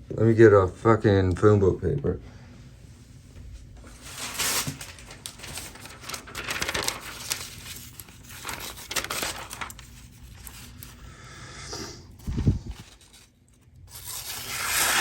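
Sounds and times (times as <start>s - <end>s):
thin paper rustling and tearing: 3.9s - 11.0s, 12.2s - 15.0s.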